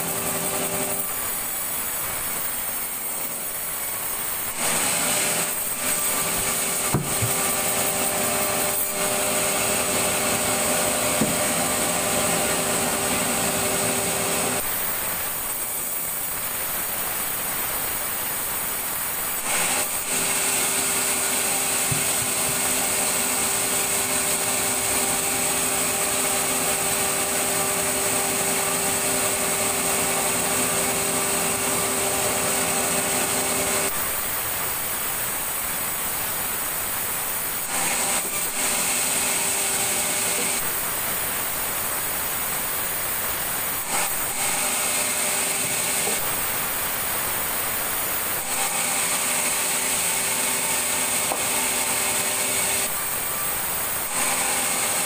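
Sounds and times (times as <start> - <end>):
sawmill saw whining: 0.0 - 55.0.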